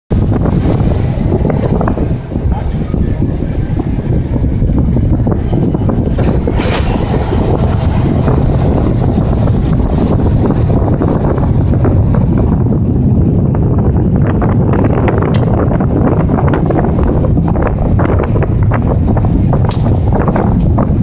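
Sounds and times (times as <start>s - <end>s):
engine low rumble: 0.1s - 21.0s
knocks and rattles: 4.7s - 12.5s, 14.2s - 21.0s.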